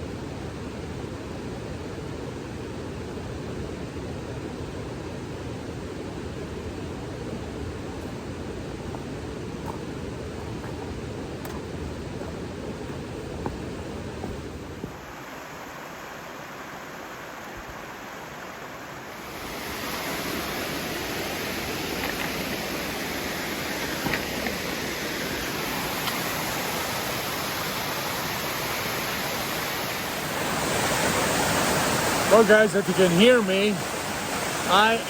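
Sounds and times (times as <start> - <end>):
waterfall and creek rushing: 6.0 - 35.0.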